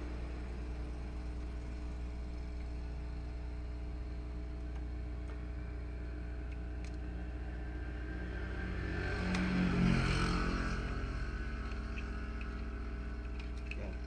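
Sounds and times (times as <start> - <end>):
steady low hum: 0.0 - 14.0
motor vehicle passing by: 7.5 - 13.0.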